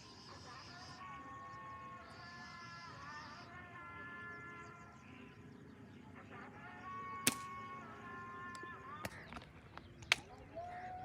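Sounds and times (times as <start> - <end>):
ambient music with held tones: 0.0 - 11.0
sharp crack: 7.3 - 7.6, 9.0 - 10.4.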